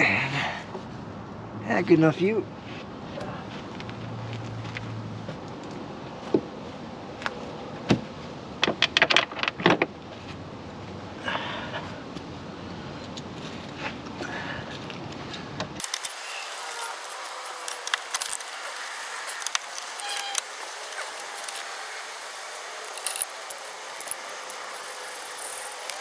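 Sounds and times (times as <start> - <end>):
metallic clicks of hand tools: 15.8 - 26.0.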